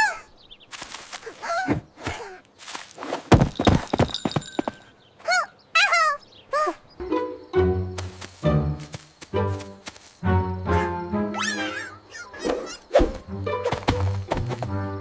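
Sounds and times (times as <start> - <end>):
squeaky cartoon cries: 5.2 - 6.8, 11.3 - 12.8.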